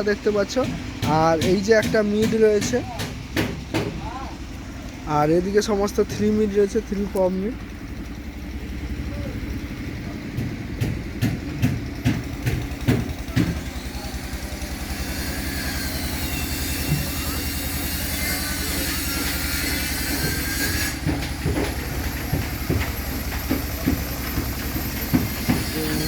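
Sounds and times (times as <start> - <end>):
low machine hum: 0.0 - 26.0
sharp knocks: 0.5 - 4.2, 5.9 - 6.6, 10.3 - 13.7, 18.6 - 26.0.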